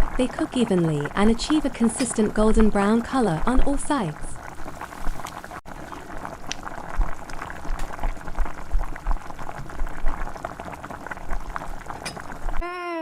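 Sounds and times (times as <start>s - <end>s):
deep-frying oil sizzling and popping: 0.0s - 12.6s.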